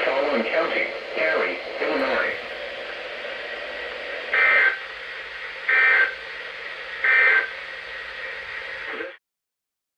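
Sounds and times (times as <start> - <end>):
radio hiss: 0.0 - 9.2
digital two-tone warbling bursts: 4.3 - 4.9, 5.6 - 6.2.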